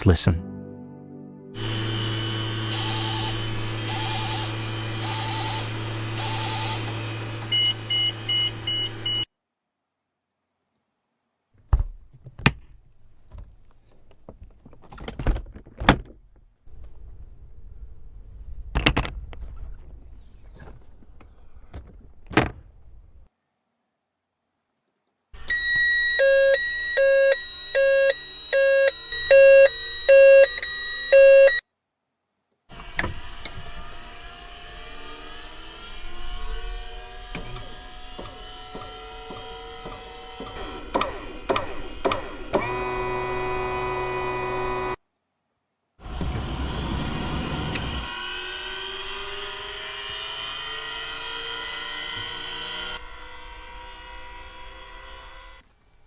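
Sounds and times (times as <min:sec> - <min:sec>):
mechanical whine rising in pitch: 0:01.6 - 0:09.2
electronic warning tone beeping: 0:01.6 - 0:09.3, 0:25.5 - 0:31.6.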